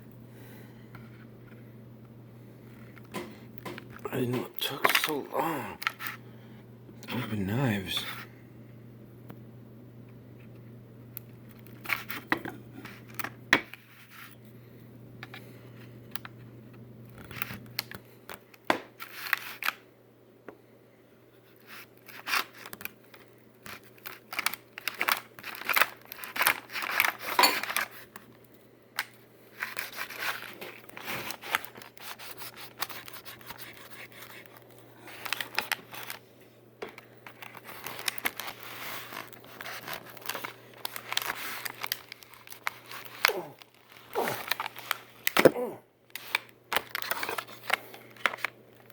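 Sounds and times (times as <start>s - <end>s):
hard plastic packaging being cut: 37.4s - 47.7s.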